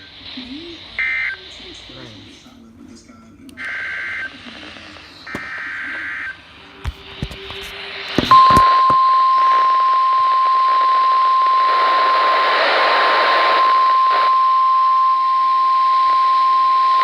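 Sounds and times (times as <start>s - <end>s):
radio static hiss: 0.0s - 17.0s
steady alarm tone: 8.3s - 17.0s.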